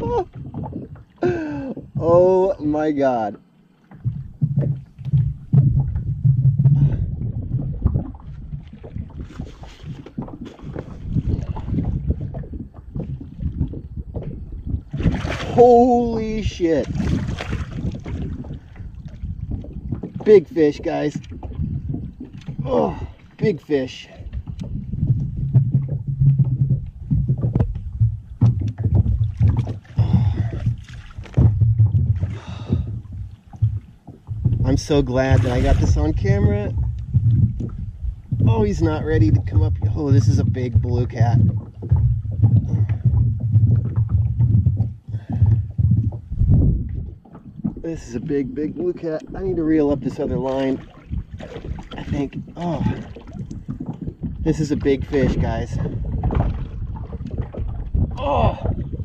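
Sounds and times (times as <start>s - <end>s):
low rumble: 0.0s - 59.0s
wind buffeting microphone: 0.0s - 59.0s
fishing gear knocking on kayak: 24.2s - 35.1s, 35.7s - 47.8s.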